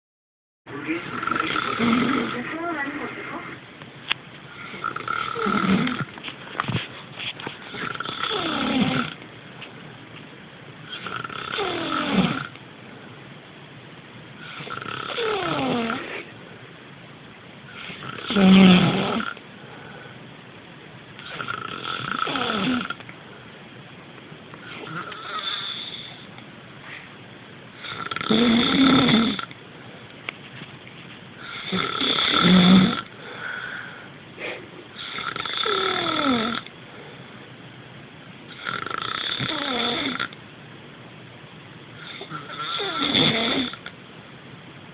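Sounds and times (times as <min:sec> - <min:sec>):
person snoring: 0:00.8 - 0:03.6, 0:04.5 - 0:06.1, 0:07.7 - 0:09.2, 0:10.9 - 0:12.5, 0:14.4 - 0:16.3, 0:17.7 - 0:19.4, 0:21.2 - 0:23.0, 0:24.6 - 0:26.3, 0:27.8 - 0:29.5, 0:31.4 - 0:36.7, 0:38.5 - 0:40.4, 0:42.0 - 0:43.9.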